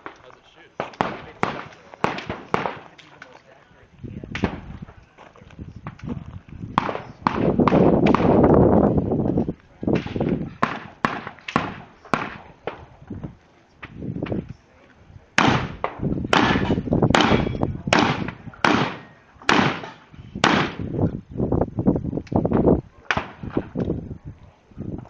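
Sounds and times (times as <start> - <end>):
rapid gunshots with echo: 0.8 - 3.0, 6.8 - 8.4, 10.0 - 12.8, 15.4 - 20.9.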